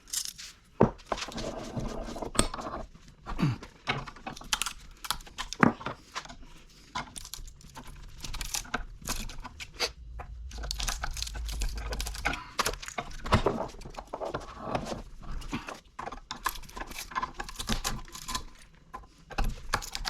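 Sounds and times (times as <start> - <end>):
metal parts clicking and scraping: 0.0 - 1.5, 3.9 - 20.0
low hum: 7.6 - 14.8.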